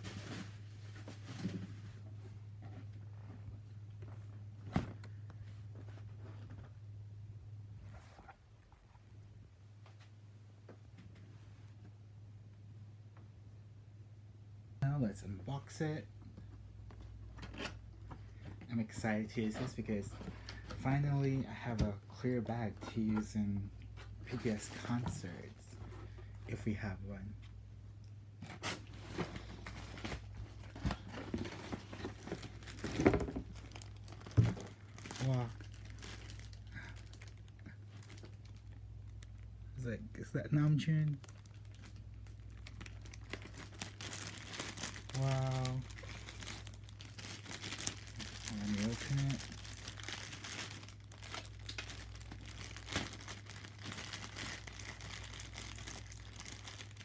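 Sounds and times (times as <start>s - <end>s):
plastic packaging crinkling: 0.0s - 2.0s, 28.6s - 39.5s, 41.1s - 57.0s
steady low hum: 0.0s - 57.0s.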